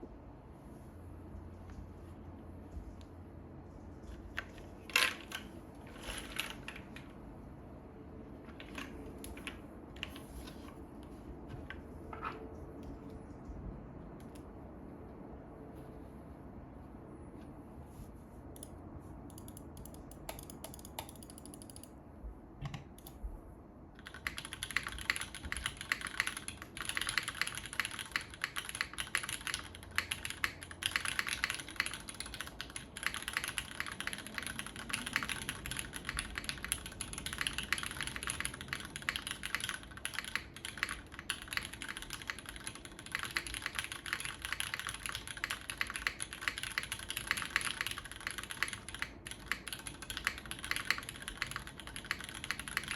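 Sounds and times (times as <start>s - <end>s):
mechanical keyboard typing: 19.3s - 22.0s, 24.0s - 52.9s.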